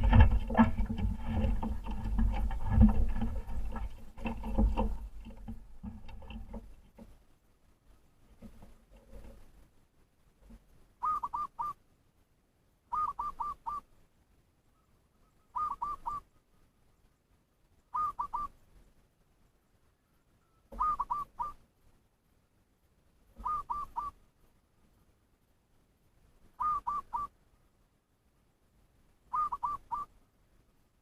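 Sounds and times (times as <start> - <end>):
bird decoy call whistled notes: 11.0 - 11.8, 12.9 - 13.9, 14.8 - 16.3, 17.9 - 18.6, 20.4 - 21.6, 23.4 - 24.2, 26.6 - 27.3, 29.3 - 30.1.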